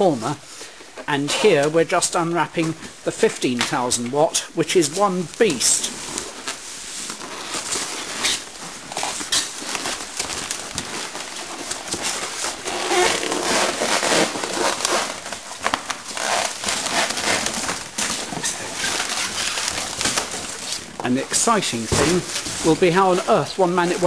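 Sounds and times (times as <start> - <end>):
packaging crackling and rustling: 4.9 - 24.0.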